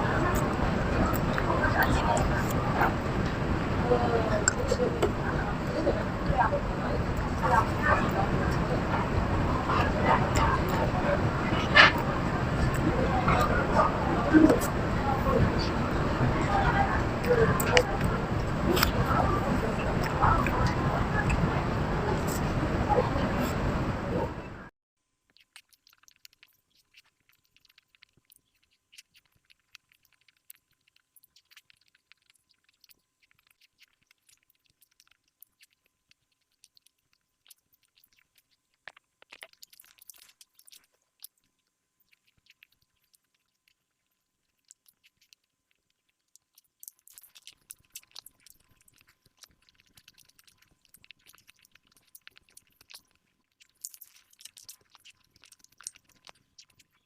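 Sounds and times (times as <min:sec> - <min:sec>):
chewing mouth clicks and smacks: 0:18.6 - 0:19.1, 0:25.3 - 0:57.0.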